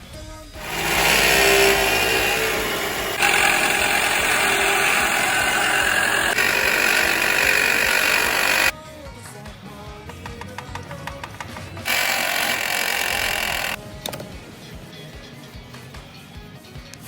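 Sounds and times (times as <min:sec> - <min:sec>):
alternator droning: 0:00.6 - 0:08.7.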